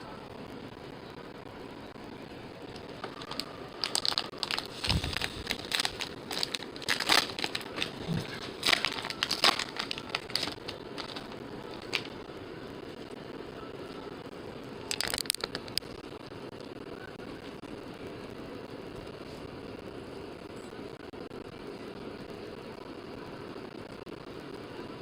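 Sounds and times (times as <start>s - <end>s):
wrappers crinkling and tearing: 2.7s - 12.2s, 14.9s - 15.9s.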